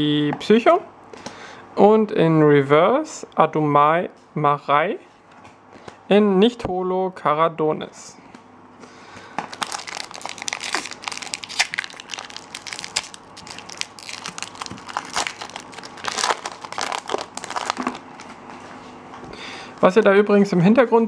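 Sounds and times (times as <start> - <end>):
foil wrapper crackling: 9.4 - 18.4.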